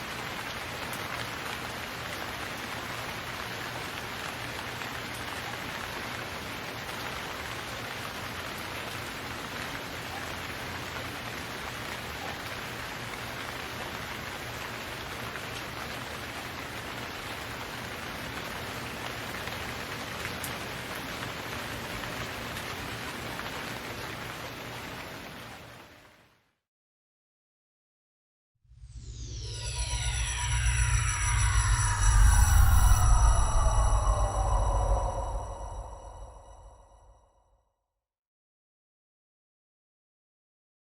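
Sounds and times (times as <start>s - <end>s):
steady rain falling: 0.0s - 26.5s.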